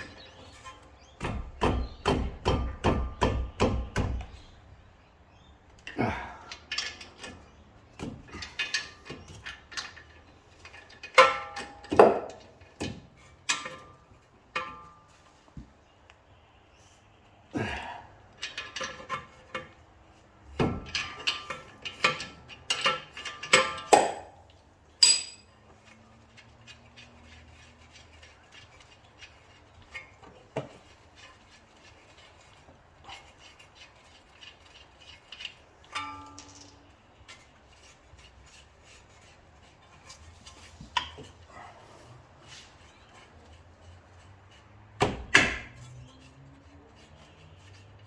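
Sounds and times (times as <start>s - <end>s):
metal tools clanking: 23.8s - 24.4s, 25.0s - 25.5s.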